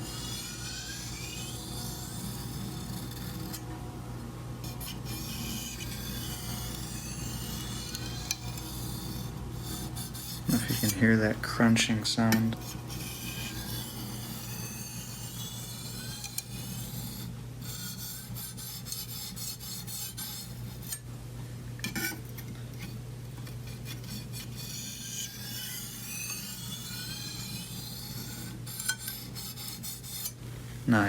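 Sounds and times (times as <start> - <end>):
knife scraping on whetstone: 0.0 - 3.6, 4.6 - 11.2, 12.6 - 21.0, 22.8 - 30.4.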